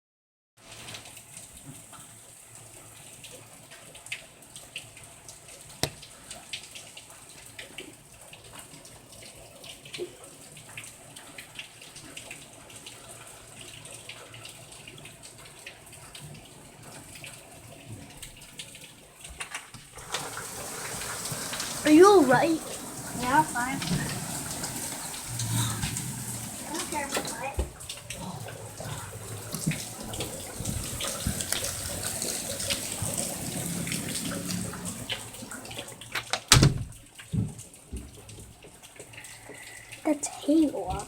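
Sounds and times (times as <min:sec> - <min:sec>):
hail ticking on hard surfaces: 0:20.0 - 0:35.3.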